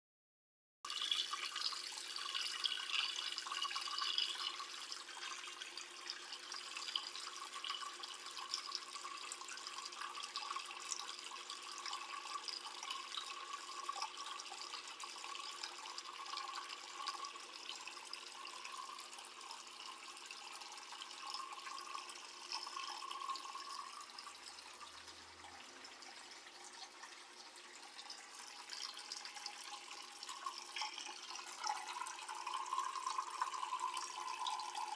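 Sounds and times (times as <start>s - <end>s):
water splashing in washing machine: 0.9s - 15.5s.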